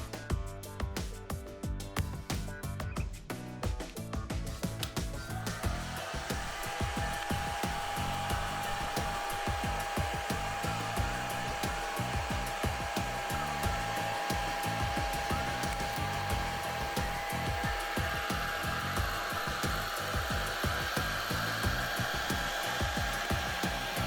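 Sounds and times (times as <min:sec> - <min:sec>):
background music: 0:00.0 - 0:24.0
hair dryer running: 0:05.2 - 0:24.0.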